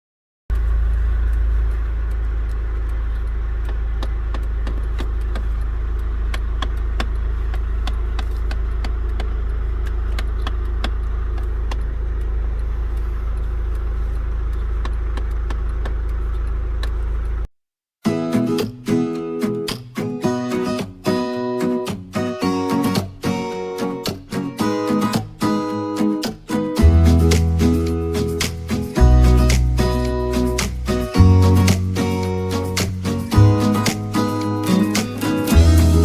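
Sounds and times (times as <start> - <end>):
low engine hum: 0.5 - 17.5, 26.8 - 36.0.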